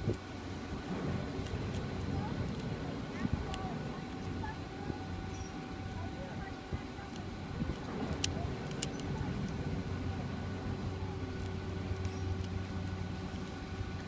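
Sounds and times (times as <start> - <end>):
chairlift machinery humming: 0.0 - 14.0
sharp mechanical clicks: 7.1 - 9.7.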